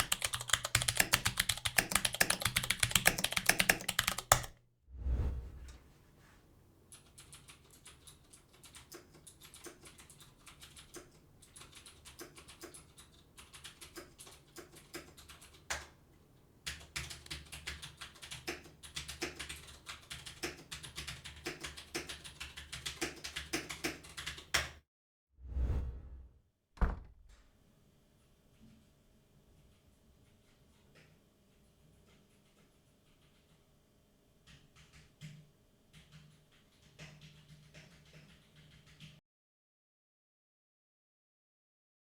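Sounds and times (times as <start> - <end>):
typing on clicky keyboard: 0.0 - 4.6, 6.9 - 15.9, 16.6 - 24.8, 34.5 - 39.2
loud thump: 25.6 - 27.4.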